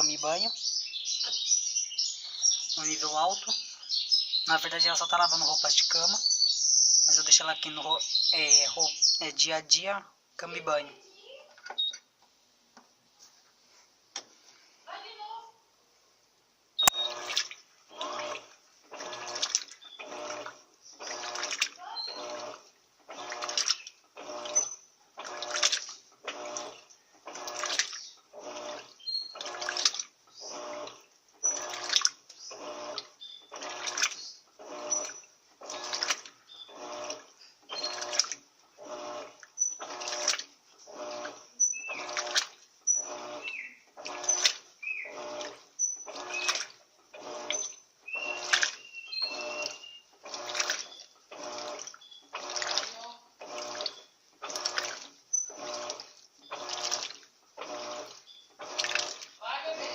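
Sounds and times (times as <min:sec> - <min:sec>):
washing machine water sloshing: 0:16.8 - 0:59.9.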